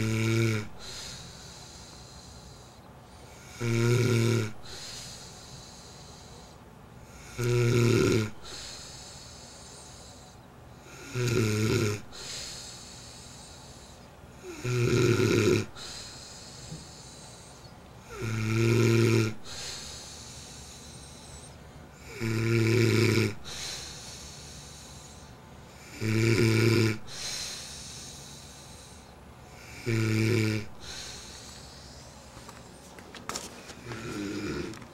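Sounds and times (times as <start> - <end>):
man snoring: 0.0 - 2.7, 3.3 - 10.2, 10.8 - 32.2, 33.8 - 34.8
breathy exhale: 0.8 - 3.6, 4.6 - 7.4, 8.4 - 11.2, 12.0 - 14.7, 15.6 - 18.4, 19.4 - 22.2, 23.4 - 26.0, 27.0 - 30.0, 30.6 - 32.4.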